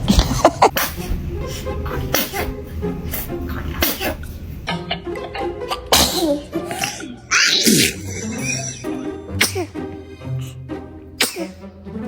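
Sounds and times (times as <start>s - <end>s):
baby sneezing: 0.0s - 1.2s, 2.1s - 4.3s, 5.7s - 9.8s, 11.2s - 11.6s.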